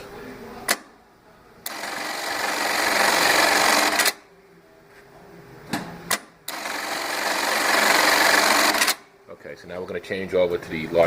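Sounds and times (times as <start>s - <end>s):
sewing machine stitching: 1.7s - 4.2s, 6.5s - 9.0s.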